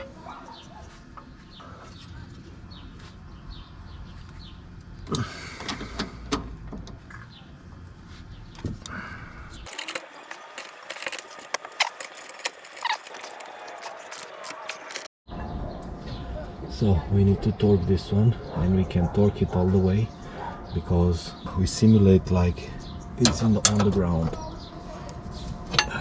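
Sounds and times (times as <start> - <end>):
hand tools and metal parts clinking: 9.7 - 15.1.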